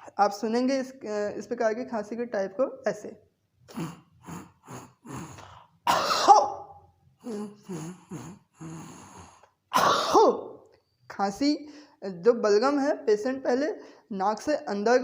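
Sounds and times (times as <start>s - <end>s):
person snorting through nose: 3.7s - 6.2s, 7.2s - 10.2s
person hawking and coughing: 3.7s - 10.6s.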